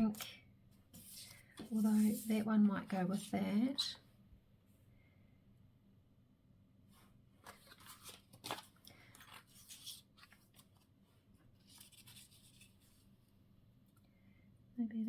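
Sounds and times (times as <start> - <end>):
paper rustling: 1.0 - 2.5, 7.0 - 13.1.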